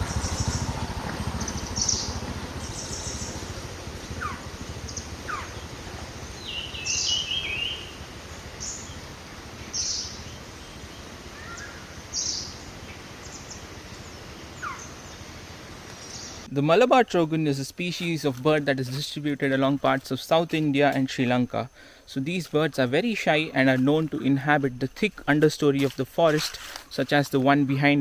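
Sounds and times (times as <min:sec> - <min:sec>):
low rumble: 0:00.0 - 0:11.2
warbling bird call: 0:00.0 - 0:15.3
birds chirping: 0:00.0 - 0:16.5.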